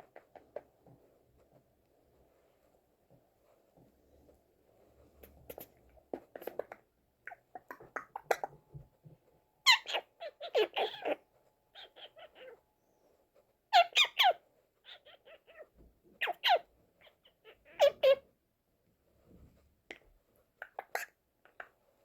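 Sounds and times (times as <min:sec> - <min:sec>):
macaw chirping calls: 0:09.7 - 0:12.6, 0:13.8 - 0:15.6.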